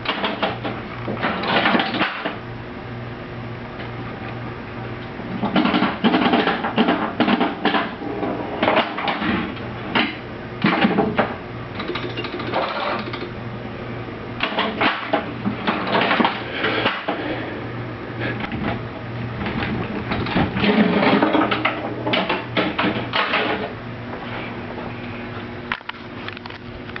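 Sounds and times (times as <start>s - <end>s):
mechanical clattering and clicking: 0.0s - 2.4s, 5.3s - 8.0s, 8.6s - 13.4s, 14.4s - 17.2s, 19.4s - 23.7s
steady low hum: 0.0s - 27.0s.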